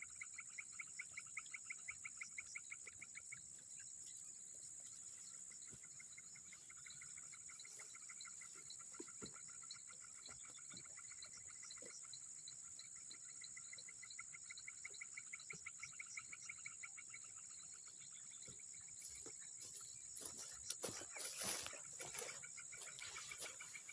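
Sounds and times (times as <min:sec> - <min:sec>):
high-pitched insect drone: 0:18.4 - 0:23.9.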